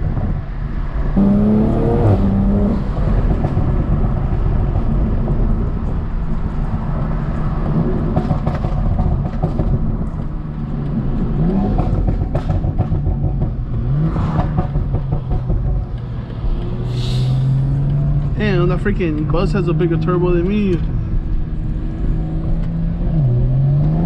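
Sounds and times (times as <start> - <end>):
car engine drone: 0.0 - 24.0
road noise: 0.0 - 24.0.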